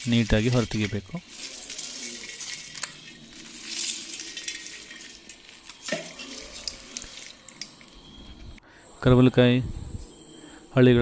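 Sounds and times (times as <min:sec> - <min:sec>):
hands squishing wet fruit: 0:00.0 - 0:08.0.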